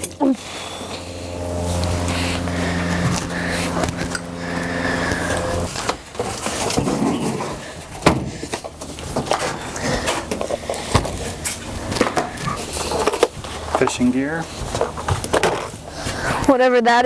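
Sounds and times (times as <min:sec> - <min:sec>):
engine running: 0:00.0 - 0:16.6.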